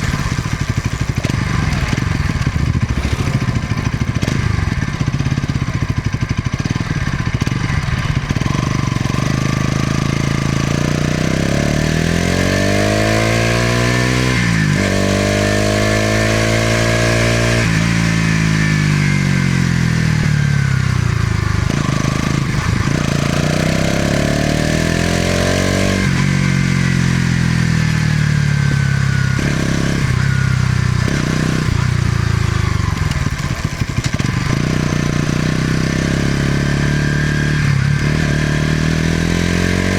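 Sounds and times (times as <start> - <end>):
motorcycle throttle blips: 0.0 - 10.7
motorcycle accelerating through gears: 0.0 - 39.9.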